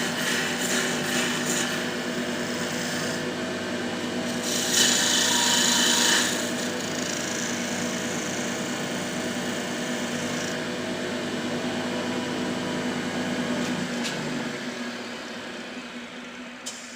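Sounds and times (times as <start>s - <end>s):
lathe motor hum: 0.0s - 16.7s
lathe cutting hiss: 4.2s - 10.6s.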